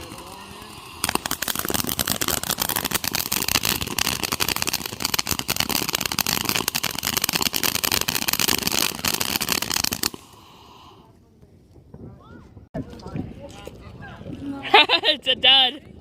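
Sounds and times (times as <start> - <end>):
fireworks crackling: 0.0 - 11.1.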